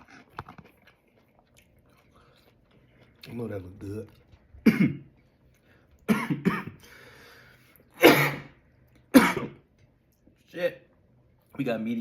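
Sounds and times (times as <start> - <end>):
man coughing: 4.6 - 5.1, 6.1 - 6.8, 8.0 - 9.6.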